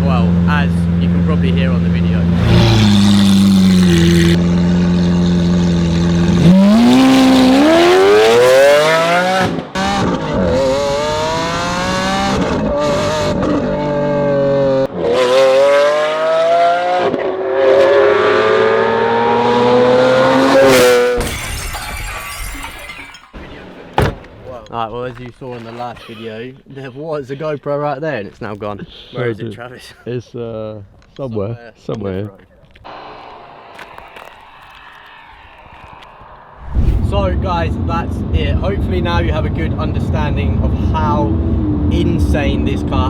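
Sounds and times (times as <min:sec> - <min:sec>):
sports car engine accelerating: 0:00.3 - 0:21.2, 0:39.6 - 0:43.0
exhaust crack: 0:02.0 - 0:07.8, 0:32.9 - 0:41.3.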